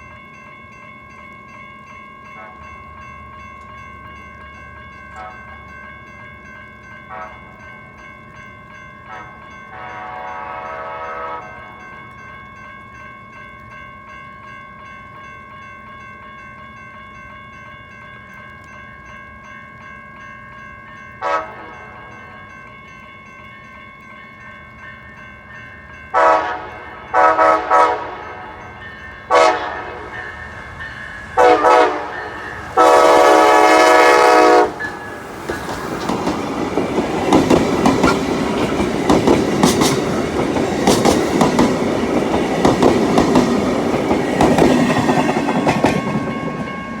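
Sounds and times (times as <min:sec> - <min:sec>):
locomotive air horn blasts: 0:09.1 - 0:11.6, 0:21.2 - 0:21.8, 0:26.2 - 0:28.4, 0:29.3 - 0:30.1, 0:31.4 - 0:34.8
train wheels clattering: 0:26.1 - 0:47.0.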